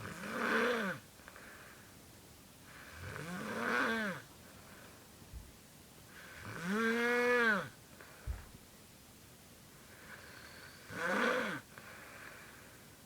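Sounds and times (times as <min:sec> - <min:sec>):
moan-like snores: 0:00.0 - 0:01.0, 0:02.7 - 0:04.3, 0:06.2 - 0:07.7, 0:10.4 - 0:11.7
soft breathy breathing: 0:01.2 - 0:02.0, 0:09.7 - 0:10.9, 0:11.7 - 0:13.0.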